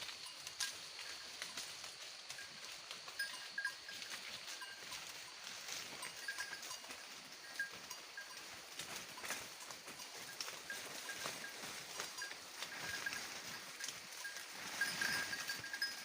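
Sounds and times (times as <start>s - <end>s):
goats rustling while feeding: 0.0s - 16.0s.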